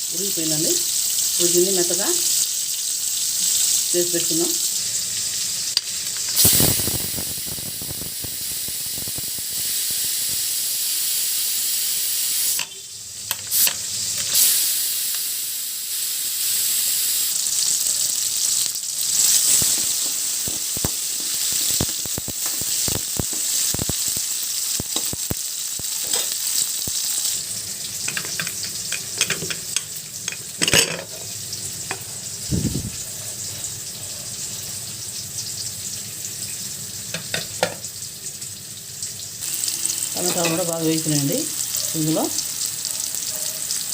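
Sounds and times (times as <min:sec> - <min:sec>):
vegetables sizzling in oil: 0:00.0 - 0:43.9
spoon stirring and scraping: 0:40.2 - 0:40.8.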